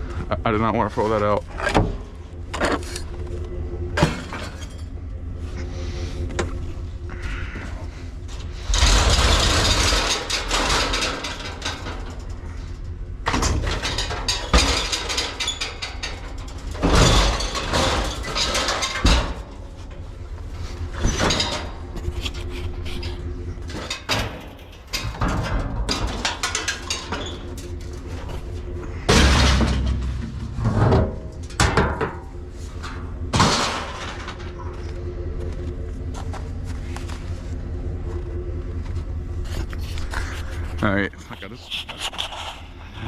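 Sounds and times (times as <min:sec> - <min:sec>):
junk clattering and rustling: 0:00.0 - 0:43.0
steady low hum: 0:00.0 - 0:43.0.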